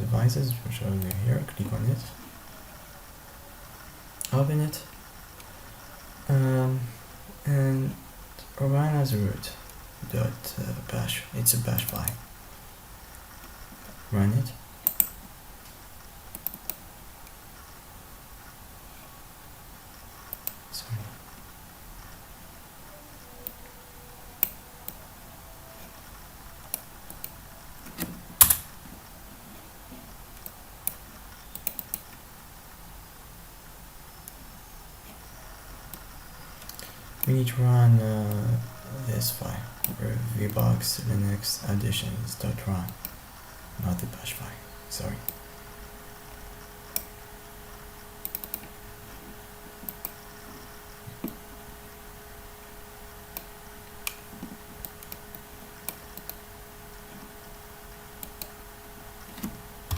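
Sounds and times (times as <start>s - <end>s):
faint steady hum: 0.0s - 59.9s.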